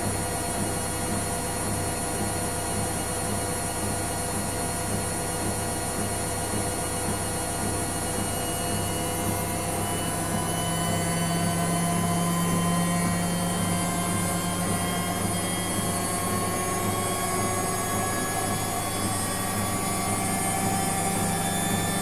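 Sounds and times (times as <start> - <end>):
washing machine motor hum: 0.0 - 22.0
whining tones: 7.9 - 22.0.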